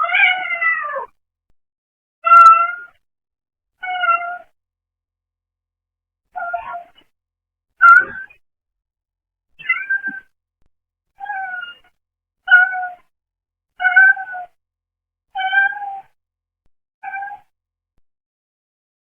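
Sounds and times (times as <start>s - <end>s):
cat meowing: 0.0s - 1.1s, 2.2s - 3.0s, 3.8s - 4.5s, 6.4s - 7.0s, 7.8s - 8.4s, 9.6s - 10.3s, 11.2s - 11.8s, 12.5s - 13.0s, 13.8s - 14.6s, 15.4s - 16.1s, 17.0s - 17.5s.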